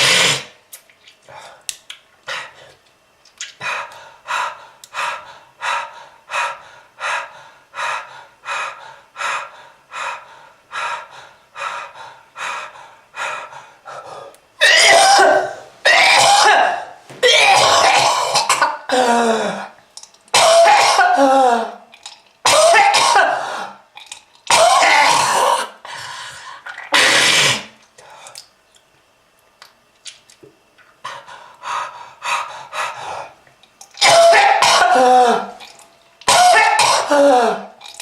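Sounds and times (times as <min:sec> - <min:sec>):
person coughing: 0:14.6 - 0:21.8, 0:22.4 - 0:23.7, 0:24.5 - 0:25.8, 0:34.0 - 0:35.6, 0:36.2 - 0:37.7.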